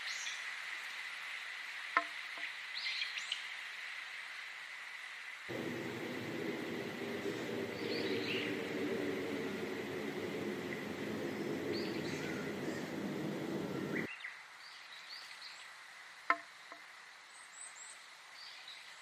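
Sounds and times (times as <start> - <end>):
low rushing noise: 5.5 - 14.1
small birds chirping: 5.5 - 14.1.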